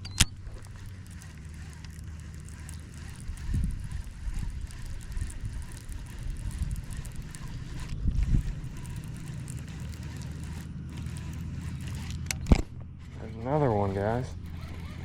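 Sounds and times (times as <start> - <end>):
steady low hum: 0.0 - 15.0
wind buffeting microphone: 0.4 - 15.0.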